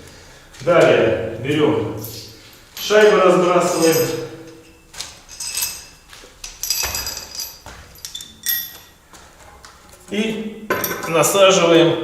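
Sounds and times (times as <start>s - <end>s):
metal washers clinking: 2.0s - 10.1s, 10.7s - 11.4s.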